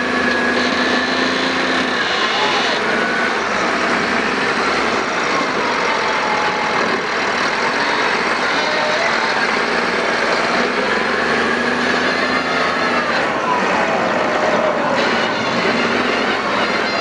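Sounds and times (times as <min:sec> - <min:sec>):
heavy diesel machinery running: 0:00.0 - 0:17.0.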